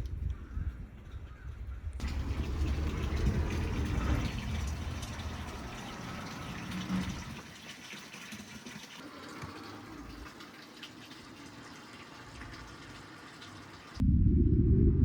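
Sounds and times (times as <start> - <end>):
low rumble: 2.0 - 7.4, 14.0 - 15.0
water rushing: 2.0 - 14.0.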